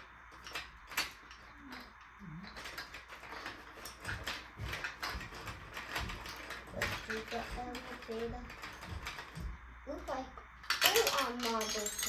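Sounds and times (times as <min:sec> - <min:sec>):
marbles clattering down plastic run: 0:10.7 - 0:12.0.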